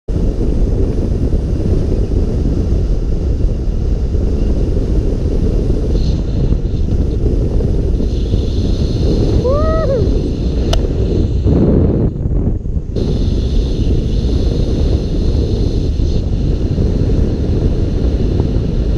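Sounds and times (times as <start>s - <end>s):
wind buffeting microphone: 0.1s - 18.9s.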